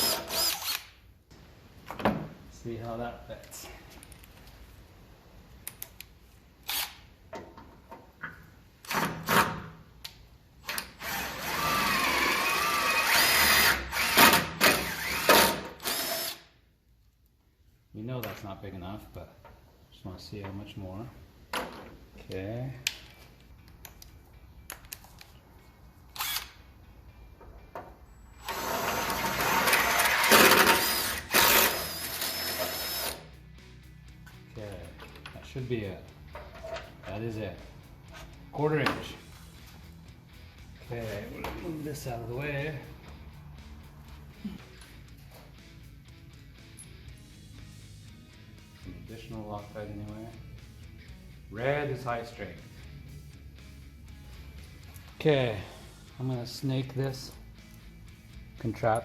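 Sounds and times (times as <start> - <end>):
power drill boring through metal: 0.0 - 0.8, 11.0 - 16.4, 28.4 - 33.2.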